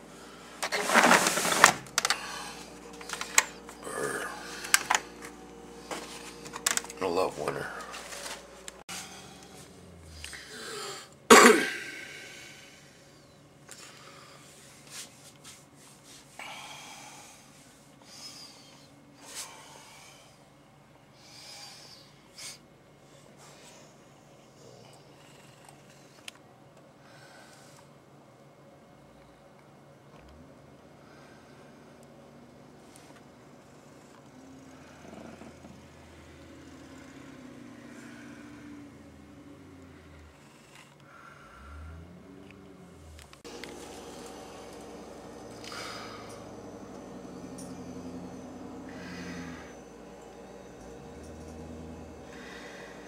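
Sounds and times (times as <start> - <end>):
person breathing: 0.0 - 0.7, 2.0 - 6.5, 7.6 - 11.2, 11.8 - 14.8, 16.4 - 20.5, 27.0 - 27.9, 37.7 - 39.1, 40.0 - 42.2, 44.9 - 47.2, 48.8 - 50.9, 52.0 - 53.0
faint vehicle engine drone: 0.0 - 15.0, 28.8 - 53.0
faint steady hum: 0.0 - 53.0.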